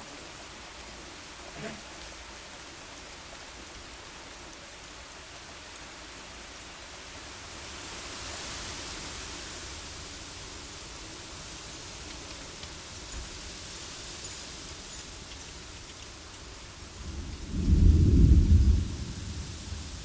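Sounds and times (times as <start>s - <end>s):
steady rain: 0.0s - 20.0s
wind: 0.0s - 20.0s.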